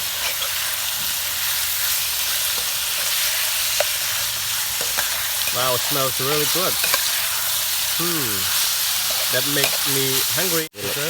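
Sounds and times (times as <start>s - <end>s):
food sizzling in hot oil: 0.0s - 11.0s.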